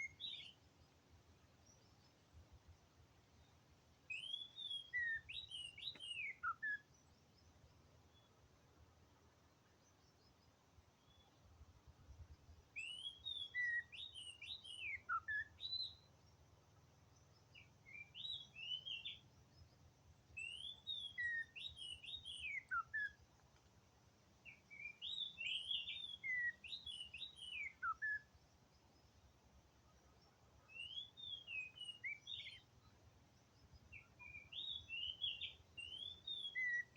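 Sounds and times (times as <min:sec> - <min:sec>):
bird singing whistled notes: 0:00.0 - 0:00.9, 0:03.4 - 0:08.3, 0:12.2 - 0:16.3, 0:17.1 - 0:23.2, 0:24.4 - 0:29.2, 0:29.9 - 0:36.9.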